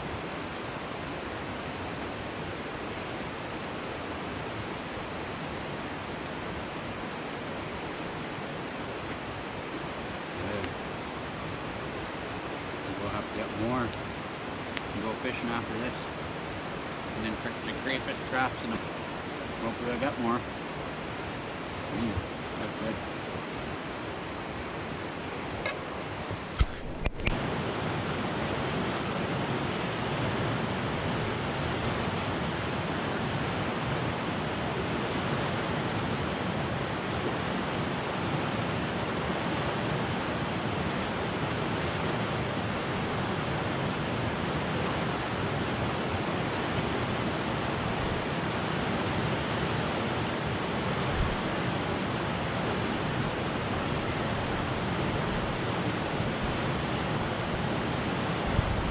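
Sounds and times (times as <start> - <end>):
stream rushing: 0.0 - 58.9
sharp clicks: 26.5 - 27.4.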